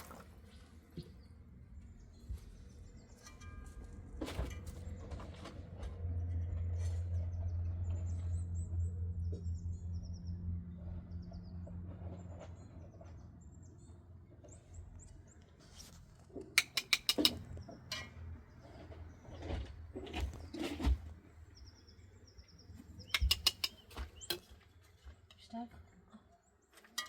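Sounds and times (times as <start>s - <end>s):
small birds chirping: 6.2s - 26.9s.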